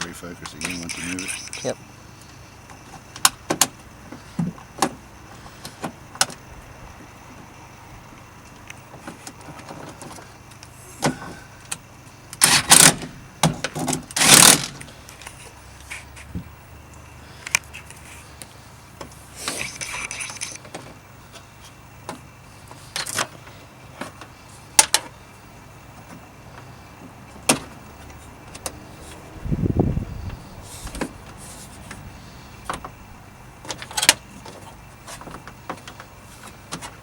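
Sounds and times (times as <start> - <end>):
small metallic clicks and rattles: 19.4 - 20.8.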